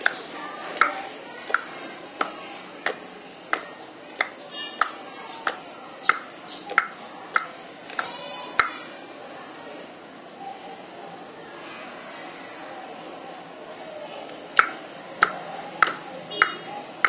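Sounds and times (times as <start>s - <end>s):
steady sharp ticks: 0.0s - 8.8s, 14.6s - 16.6s.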